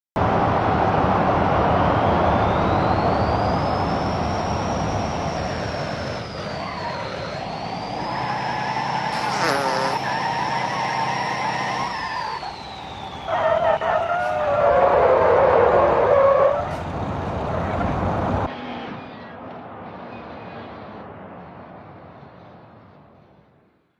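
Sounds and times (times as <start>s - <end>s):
truck engine running hard: 0.2s - 23.6s
thin high whine: 2.3s - 14.4s.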